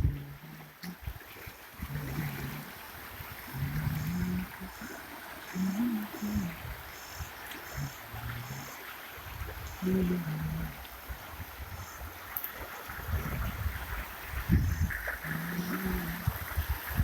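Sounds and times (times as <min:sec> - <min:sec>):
rain falling: 0:00.0 - 0:17.0
short low calls: 0:01.8 - 0:02.8, 0:03.4 - 0:08.8, 0:09.7 - 0:10.9, 0:14.5 - 0:16.4.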